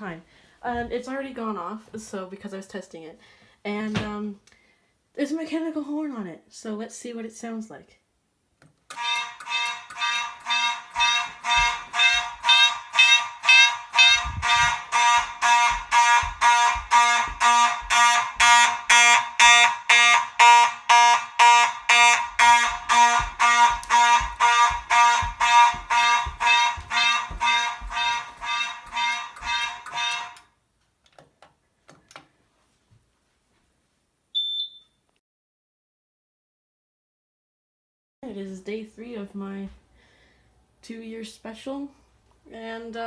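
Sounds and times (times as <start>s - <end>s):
fire alarm horn buzzing blasts: 8.9s - 30.6s.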